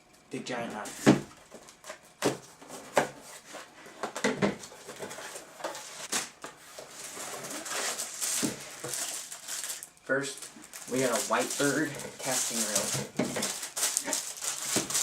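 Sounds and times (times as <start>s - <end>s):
packing material rustling: 4.6s - 15.0s.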